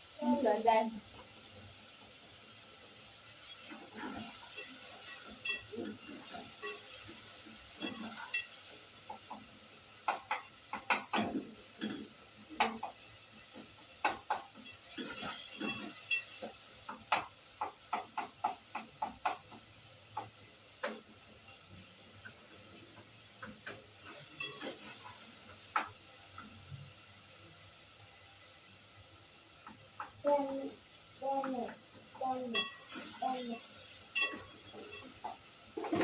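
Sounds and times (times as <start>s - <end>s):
utensils clattering on cookware: 3.6s - 7.2s, 14.0s - 17.3s, 23.4s - 26.0s, 32.2s - 36.0s.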